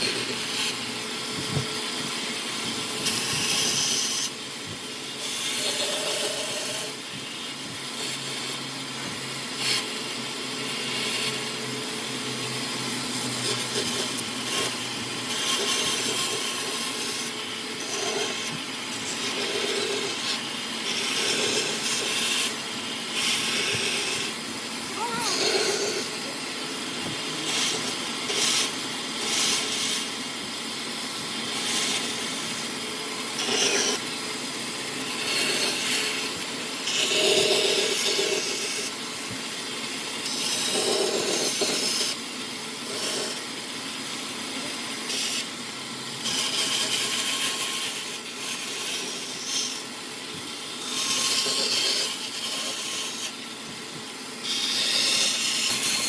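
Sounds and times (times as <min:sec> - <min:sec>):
tool rasping wood: 0:00.0 - 0:43.6, 0:44.6 - 0:56.0.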